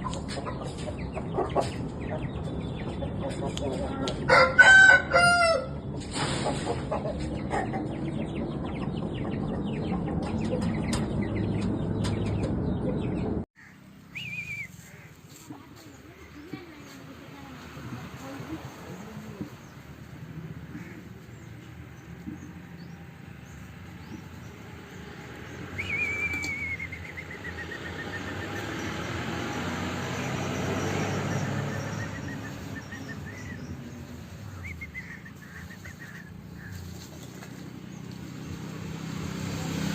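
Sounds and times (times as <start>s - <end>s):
bird trilling: 13.6s - 15.2s, 25.7s - 28.7s.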